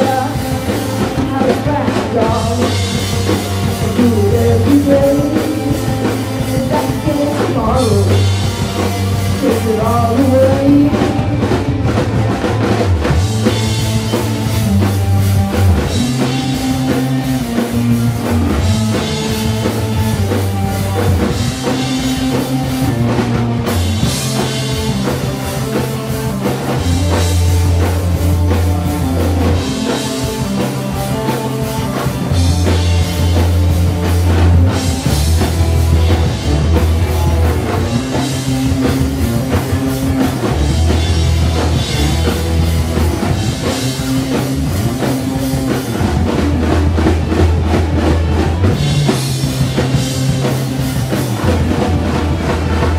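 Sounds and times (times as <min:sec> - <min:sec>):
person singing: 0:00.0 - 0:08.6, 0:09.3 - 0:11.4
rock music: 0:00.0 - 0:52.9.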